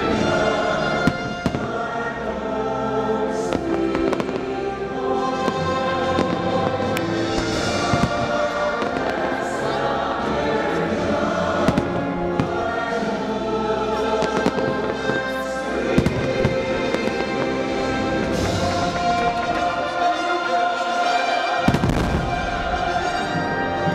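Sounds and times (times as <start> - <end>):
choir singing: 0.0 - 23.9
loud show music: 0.0 - 23.9
fireworks banging: 5.3 - 9.8, 14.2 - 20.0, 21.6 - 23.9.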